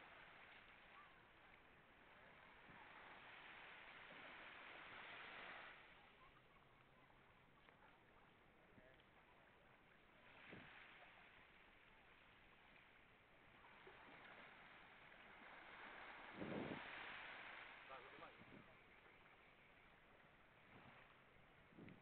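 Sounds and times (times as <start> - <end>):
faint steady hiss: 0.0 - 22.0.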